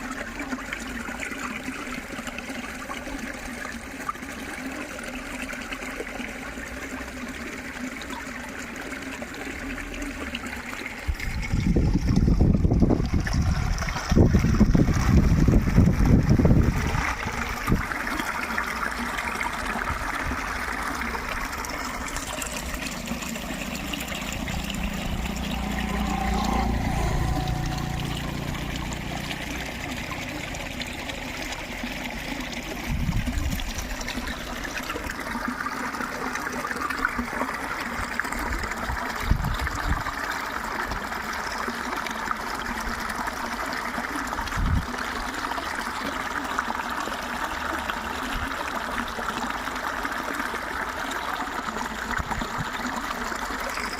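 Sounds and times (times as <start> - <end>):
water trickling: 0.0 - 53.9
low hum: 21.4 - 31.2
heavy low rumbling: 23.0 - 30.5.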